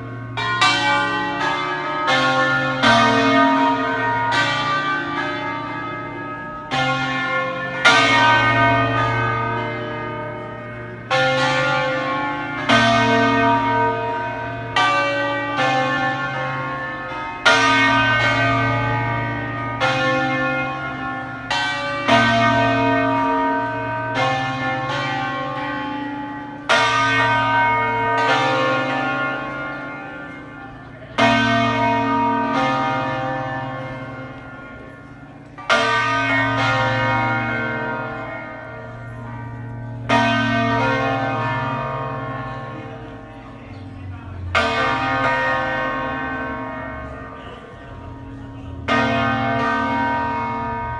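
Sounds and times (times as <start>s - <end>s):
church bells ringing: 0.0s - 50.9s.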